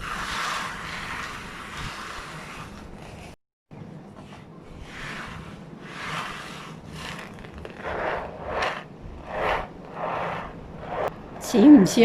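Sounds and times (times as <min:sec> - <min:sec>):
steel balls rolling in ocean drum: 0:04.8 - 0:11.1.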